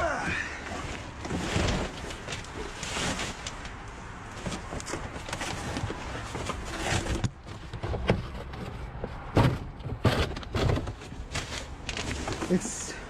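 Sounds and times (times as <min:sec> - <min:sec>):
objects rustling in a dumpster: 0:00.0 - 0:13.0
knocks and thumps: 0:04.4 - 0:11.5.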